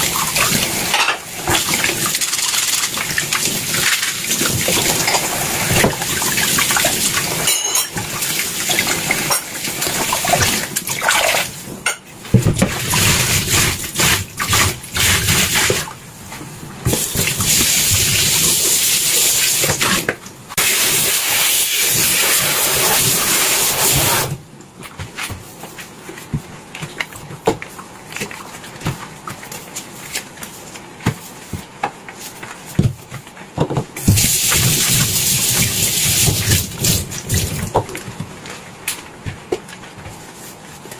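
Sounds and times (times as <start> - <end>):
dishes knocking and clinking: 7.4 - 8.1
tap water running into sink: 34.0 - 37.8.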